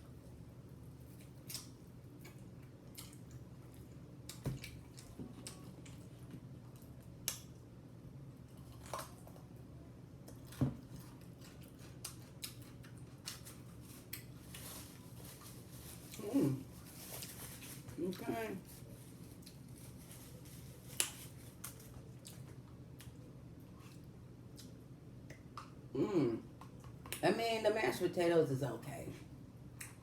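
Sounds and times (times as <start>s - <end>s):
chewing: 1.0s - 7.5s, 10.2s - 16.2s, 21.0s - 25.7s.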